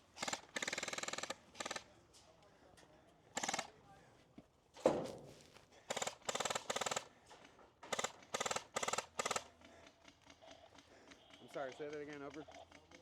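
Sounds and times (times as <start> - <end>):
airsoft rifle full-auto bursts: 0.2 - 1.8, 3.4 - 3.7, 5.9 - 7.1, 7.9 - 9.5.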